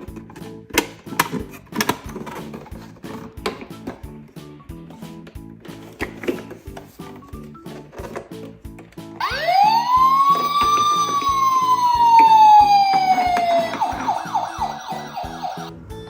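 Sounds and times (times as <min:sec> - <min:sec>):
background music with beat: 0:00.0 - 0:16.0
toy electronic siren: 0:09.2 - 0:15.7.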